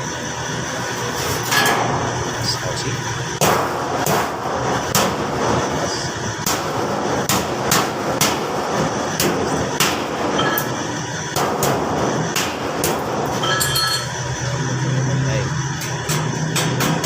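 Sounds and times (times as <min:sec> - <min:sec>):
steady background noise: 0:00.0 - 0:17.0
sharp metal knocks: 0:01.5 - 0:02.3, 0:03.4 - 0:05.3, 0:06.4 - 0:14.2, 0:15.8 - 0:17.0.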